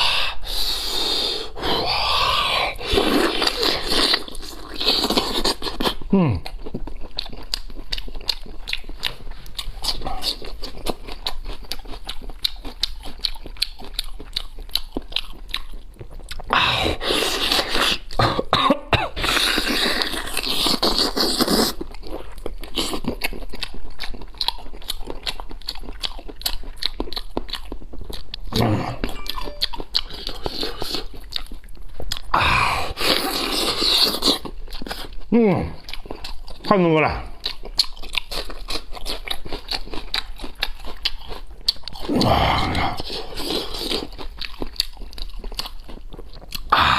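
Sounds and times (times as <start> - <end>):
chewing and lip-smacking: 0.1 - 18.5, 19.2 - 46.9
person coughing: 18.2 - 19.2.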